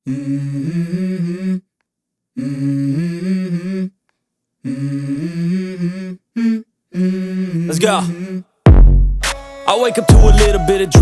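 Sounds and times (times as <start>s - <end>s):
hummed vocal phrase: 2.4s - 4.0s, 4.6s - 8.5s, 9.8s - 11.0s.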